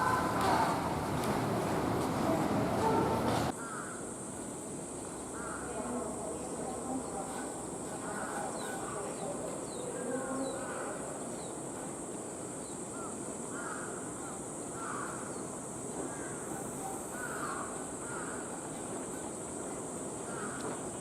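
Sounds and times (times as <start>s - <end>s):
cicada chorus: 0.0s - 21.0s
crows cawing: 3.5s - 4.2s, 5.3s - 6.0s, 8.0s - 9.0s, 12.9s - 15.4s, 16.0s - 19.2s, 20.2s - 21.0s.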